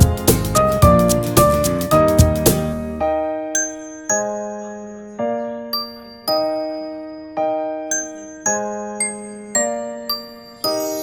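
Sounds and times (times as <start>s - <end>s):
upbeat background music: 0.0s - 5.0s.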